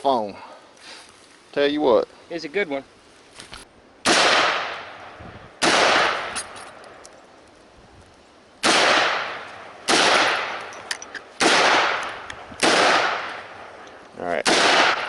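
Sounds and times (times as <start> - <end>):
handgun shots with echo: 8.6 - 10.7, 11.4 - 13.4, 14.4 - 15.0.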